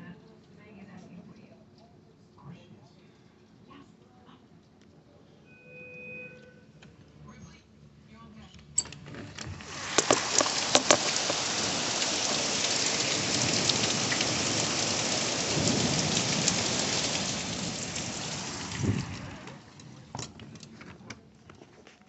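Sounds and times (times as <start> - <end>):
low rumbles: 9.2 - 21.2
torrential rain: 9.3 - 20.8.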